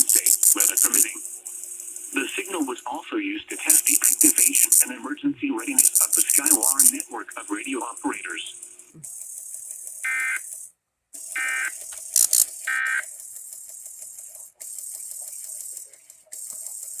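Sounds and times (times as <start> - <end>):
sharp clicks: 0.0 - 2.7, 3.5 - 5.0, 5.6 - 10.6, 11.3 - 14.8
radio static: 0.0 - 8.6
warbling data tone bursts: 0.0 - 9.0, 10.0 - 10.6, 11.2 - 13.1.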